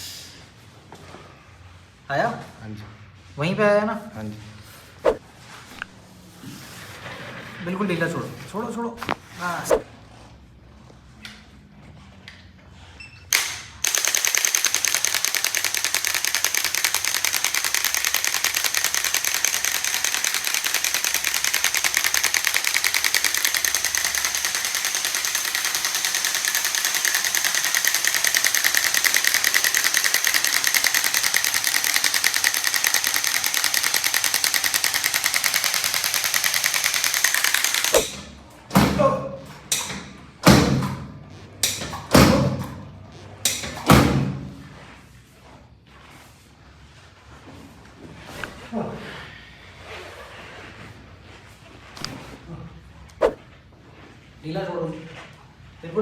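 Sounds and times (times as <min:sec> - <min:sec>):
massage gun pulsing: 0:04.7 - 0:05.9, 0:09.0 - 0:09.9, 0:13.8 - 0:38.4, 0:48.3 - 0:48.7, 0:52.0 - 0:52.3, 0:53.2 - 0:53.4.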